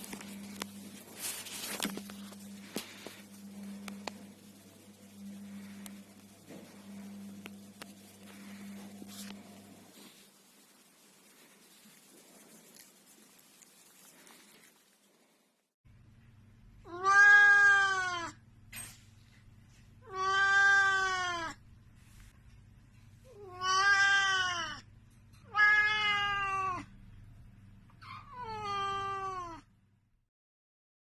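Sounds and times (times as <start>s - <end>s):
faint low hum: 0.0s - 17.0s, 26.2s - 30.2s
cat meowing: 16.9s - 18.3s, 20.1s - 21.6s, 23.4s - 24.8s, 25.5s - 26.9s, 28.0s - 29.6s.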